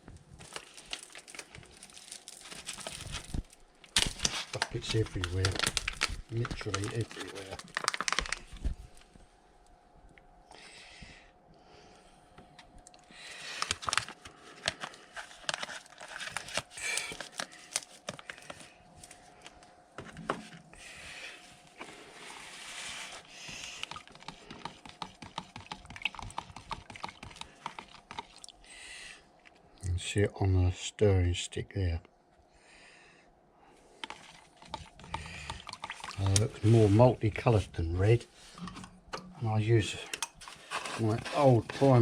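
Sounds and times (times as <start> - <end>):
stick stirring paint: 22.3 - 28.6, 34.0 - 37.6, 40.3 - 42.0.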